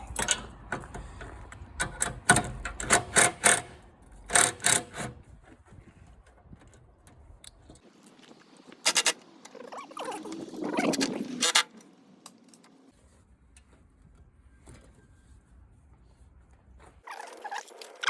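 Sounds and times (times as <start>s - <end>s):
hard parts clicking and knocking: 0.0s - 5.2s.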